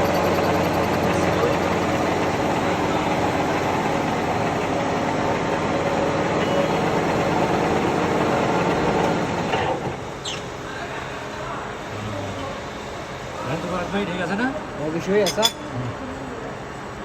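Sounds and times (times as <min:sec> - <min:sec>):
metalworking lathe running: 0:00.0 - 0:10.6.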